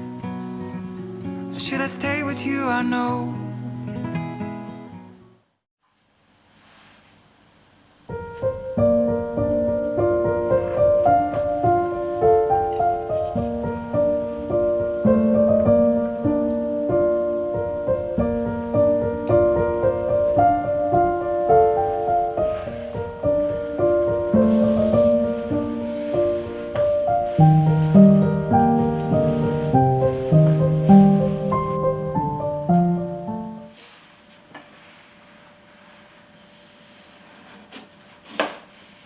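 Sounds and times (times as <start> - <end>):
solo piano piece: 0.0 - 4.2, 8.0 - 33.8.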